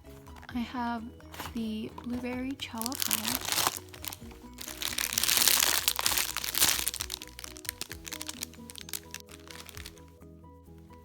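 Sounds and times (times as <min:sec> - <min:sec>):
background music: 0:00.0 - 0:11.0
plastic packaging crinkling: 0:01.3 - 0:10.0.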